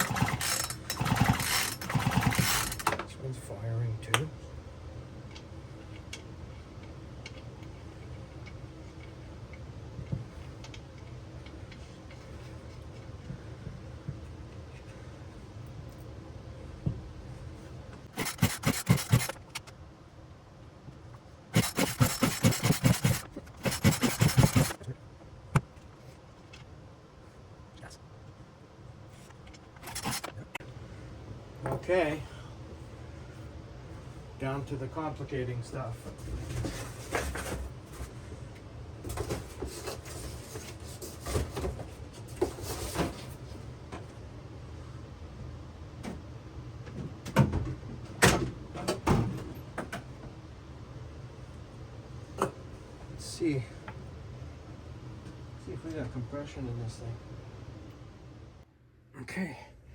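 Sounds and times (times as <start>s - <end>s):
chainsaw starter cord pulled: 0.0s - 2.9s, 18.2s - 19.4s, 21.6s - 24.8s
engine cranking without catching: 0.0s - 2.9s, 18.1s - 19.7s, 21.6s - 24.8s, 29.8s - 30.5s
steady low hum: 0.0s - 48.8s
tools clicking on workbench: 18.2s - 19.7s.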